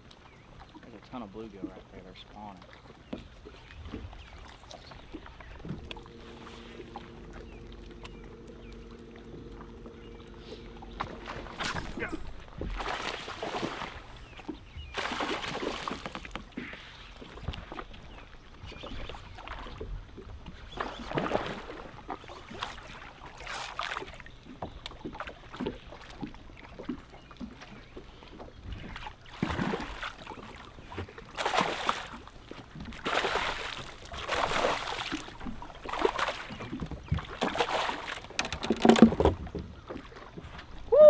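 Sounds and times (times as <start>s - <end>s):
water sloshing and splashing: 0.0s - 40.9s.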